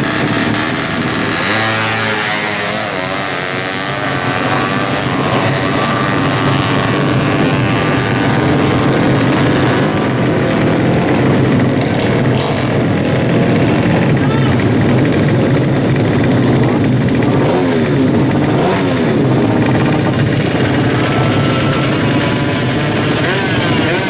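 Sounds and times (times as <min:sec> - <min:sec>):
motorcycle engines revving: 0:00.0 - 0:24.0.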